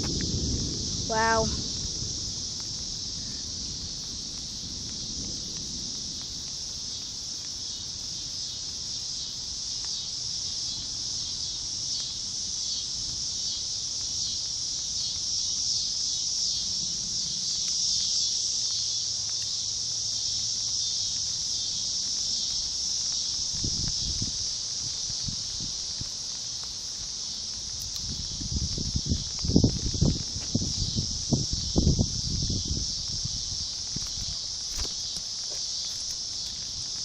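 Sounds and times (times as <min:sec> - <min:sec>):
wind rumble on microphone: 0:00.0 - 0:08.8, 0:23.4 - 0:37.0
insects trilling: 0:00.0 - 0:37.0.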